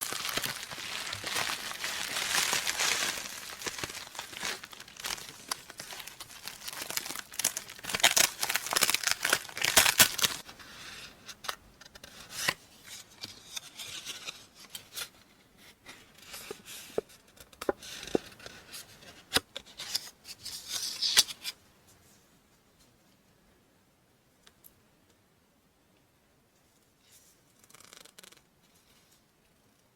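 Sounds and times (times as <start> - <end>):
packaging tearing and crinkling: 0.0 - 10.4.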